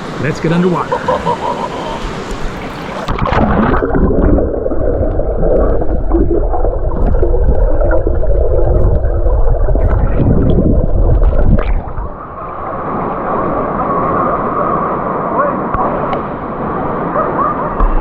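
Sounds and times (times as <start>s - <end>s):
underwater rumble and gurgle: 1.5s - 18.0s
underwater clicks and knocks: 17.8s - 18.0s.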